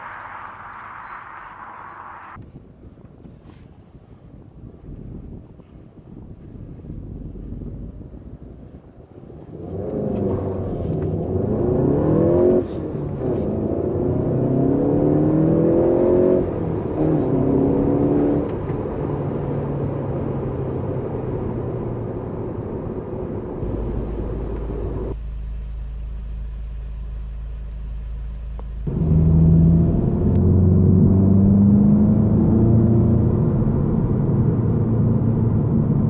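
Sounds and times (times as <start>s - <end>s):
car engine accelerating hard: 9.2s - 36.0s.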